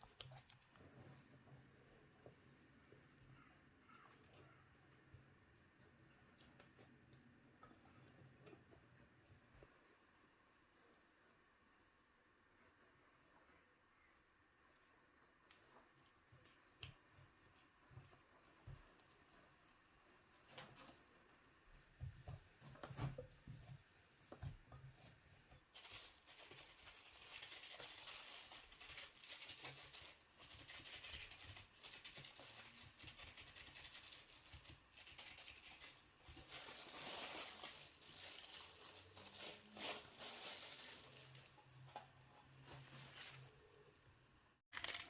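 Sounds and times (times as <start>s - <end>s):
rustling crinkling and scraping: 14.8s - 44.1s.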